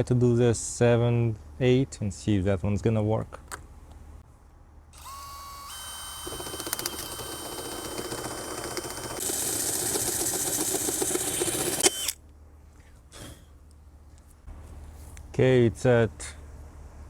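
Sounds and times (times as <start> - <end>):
power drill whining: 5.0 - 12.2
step drill bit grinding metal: 5.0 - 12.2.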